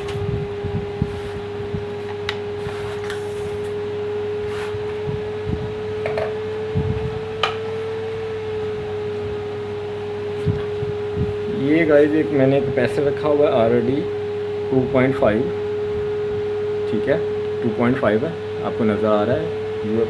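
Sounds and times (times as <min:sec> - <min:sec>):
electrical whine: 0:00.0 - 0:20.0
low hum: 0:00.0 - 0:20.0.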